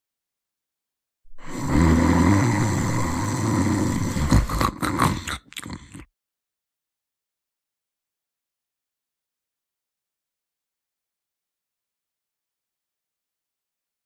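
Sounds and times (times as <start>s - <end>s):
loud snoring: 1.3s - 6.1s.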